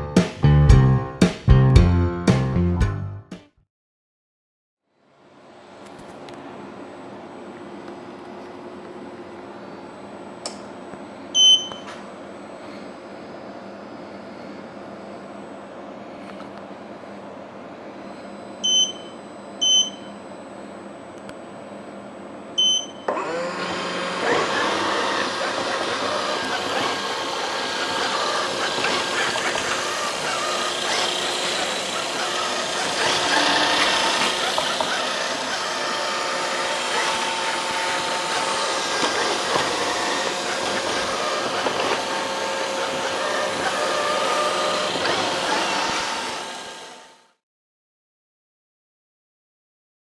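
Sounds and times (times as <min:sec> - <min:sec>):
robot vacuum beeping: 0:11.4 - 0:12.0, 0:18.6 - 0:20.1, 0:22.6 - 0:46.4
vacuum motor whining: 0:23.0 - 0:47.4.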